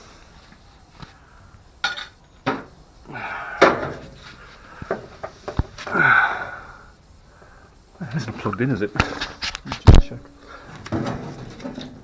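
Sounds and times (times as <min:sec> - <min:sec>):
plastic panel knocks and clatters: 0:10.9 - 0:12.0.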